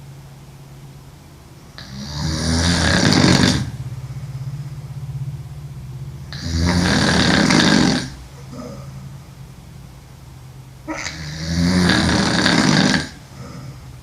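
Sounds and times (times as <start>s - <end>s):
woman snoring heavily: 1.8s - 3.8s, 6.3s - 9.2s, 10.8s - 14.0s.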